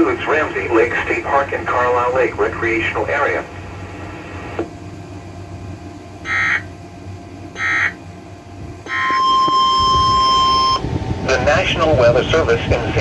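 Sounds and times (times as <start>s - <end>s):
warbling digital data tones: 8.9s - 10.8s
loud steady alarm tone: 8.9s - 11.6s.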